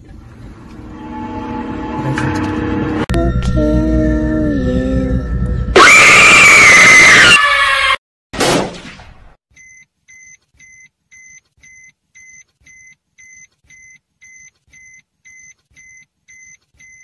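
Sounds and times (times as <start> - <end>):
loud ringing hit: 0.8 - 5.8.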